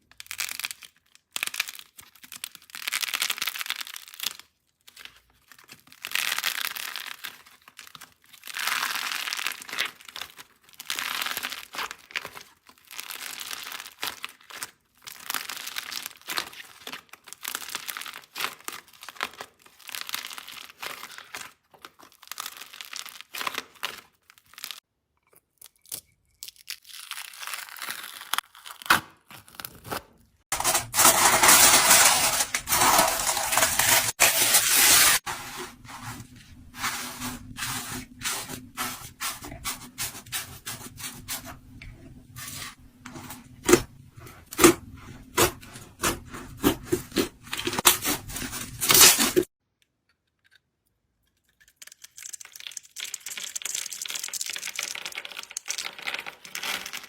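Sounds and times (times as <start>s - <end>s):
slime crackling and popping: 51.8s - 57.0s.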